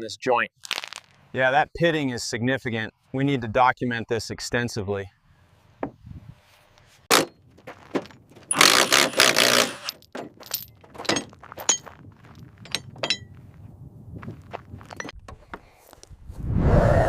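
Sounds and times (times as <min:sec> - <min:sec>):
harsh crunching metal scrape: 0:07.1 - 0:10.4
metal parts knocking and clinking: 0:07.1 - 0:13.4, 0:14.8 - 0:15.6.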